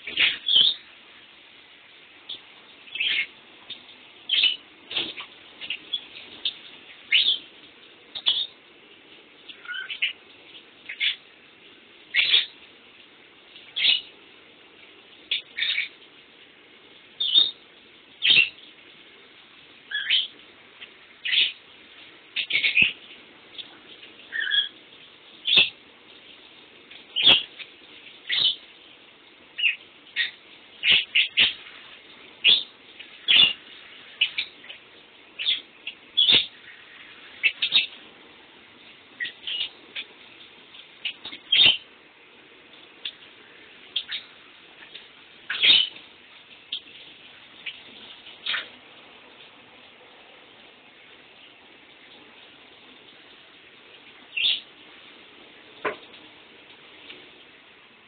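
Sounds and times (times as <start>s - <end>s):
lovebird chirping: 0.0s - 0.9s, 2.2s - 7.5s, 8.1s - 8.6s, 9.5s - 10.2s, 12.1s - 12.6s, 17.2s - 17.6s, 18.2s - 18.6s, 19.9s - 20.4s, 22.3s - 24.8s, 27.1s - 28.6s, 29.5s - 31.8s, 32.4s - 34.8s, 35.4s - 38.0s, 39.2s - 40.2s, 41.0s - 41.9s, 43.0s - 44.4s, 45.5s - 46.0s, 54.3s - 54.7s.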